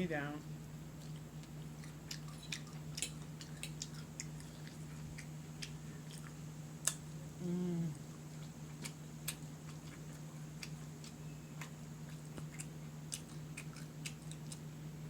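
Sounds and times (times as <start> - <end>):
steady low hum: 0.0 - 15.0
person chewing: 1.0 - 14.7.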